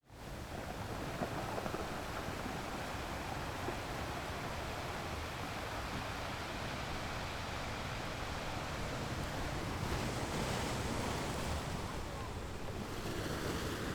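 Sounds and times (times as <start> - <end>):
surf washing against rocks: 1.4 - 13.9.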